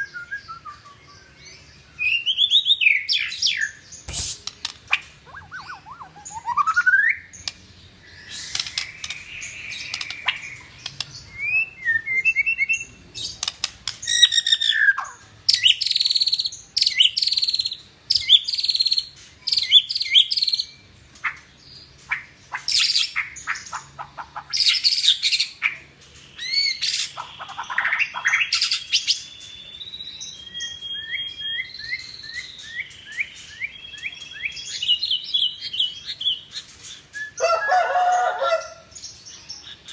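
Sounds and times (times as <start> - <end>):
songbird singing whistles and trills: 0.0 - 21.4, 26.4 - 38.4.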